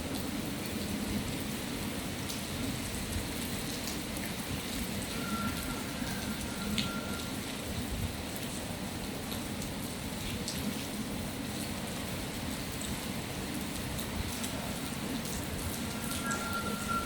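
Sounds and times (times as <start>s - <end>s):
raindrops ticking: 3.4s - 7.6s, 12.7s - 17.0s
rain rushing hiss: 11.3s - 17.0s.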